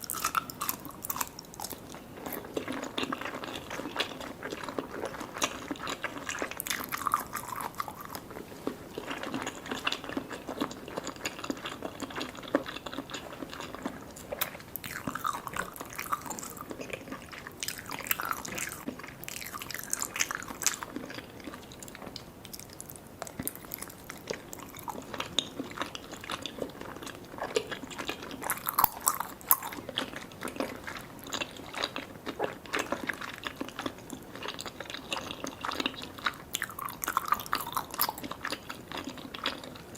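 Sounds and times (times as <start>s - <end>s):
close chewing sticky food: 0.0s - 39.9s.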